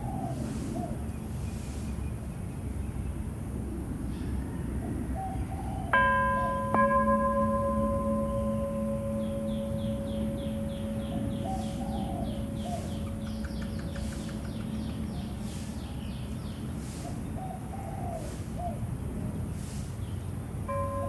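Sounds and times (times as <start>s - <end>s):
bird chirping: 5.2s - 18.4s
struck bell ringing: 6.0s - 13.4s, 20.7s - 21.0s
lower call: 6.0s - 15.8s.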